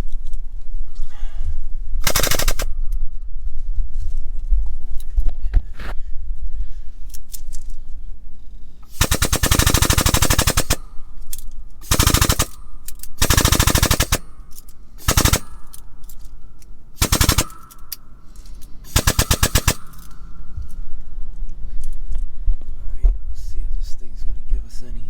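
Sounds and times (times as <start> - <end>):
rapid mechanical rattling clicks: 2.0 - 2.7, 8.9 - 16.4, 17.0 - 20.3.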